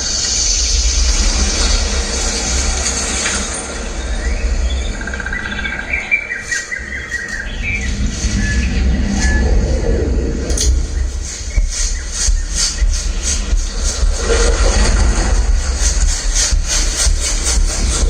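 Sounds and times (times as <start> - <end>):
deep steady rumble: 7.4 - 18.0.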